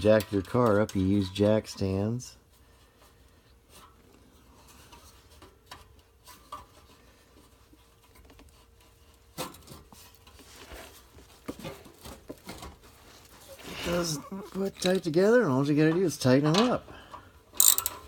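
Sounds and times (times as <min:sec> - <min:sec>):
faint steady hum: 0:00.0 - 0:18.0
hands handling metal parts: 0:00.0 - 0:18.0.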